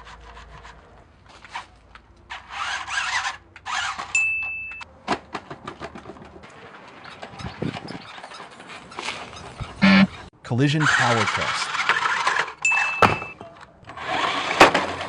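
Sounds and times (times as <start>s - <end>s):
high-pitched beep: 9.8s - 10.1s, 12.7s - 13.4s
wheels churning and splashing mud: 10.7s - 12.4s.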